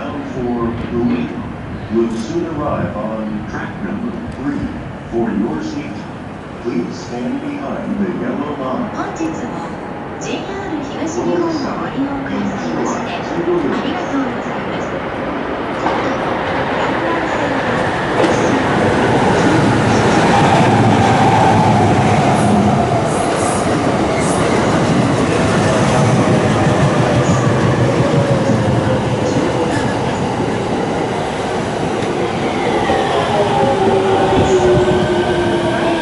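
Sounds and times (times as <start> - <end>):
train wheels rumbling on rails: 12.6 - 36.0.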